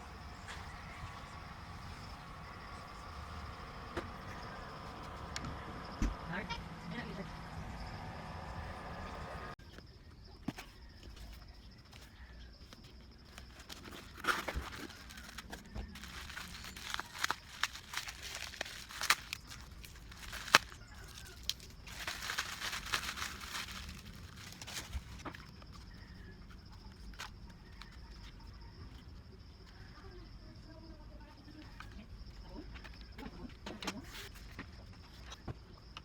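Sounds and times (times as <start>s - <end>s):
low steady background: 0.0s - 14.1s
rustling and crinkling: 10.4s - 29.8s.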